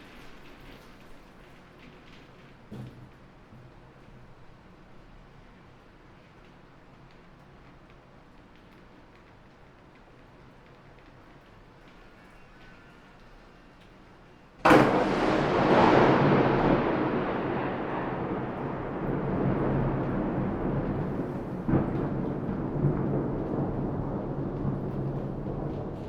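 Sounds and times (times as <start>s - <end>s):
thunderclap with rolling rumble: 14.6s - 26.0s
heavy rain hiss: 14.7s - 26.0s.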